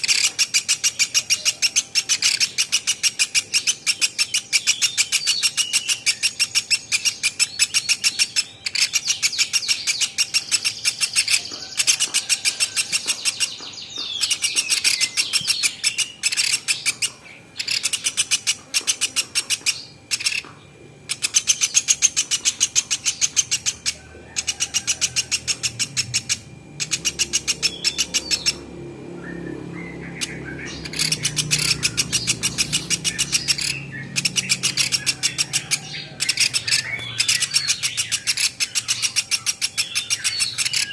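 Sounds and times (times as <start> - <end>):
bird chirping trills: 0.0 - 40.9.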